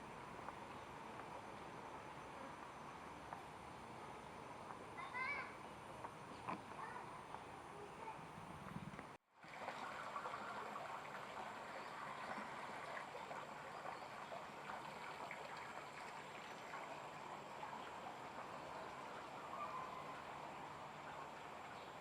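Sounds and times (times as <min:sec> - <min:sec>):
water trickling in a stream: 0:09.2 - 0:22.0.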